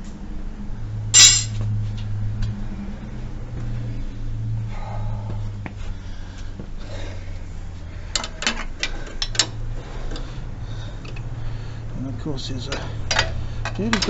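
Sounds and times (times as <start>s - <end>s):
metal spanners clinking: 1.2s - 1.6s.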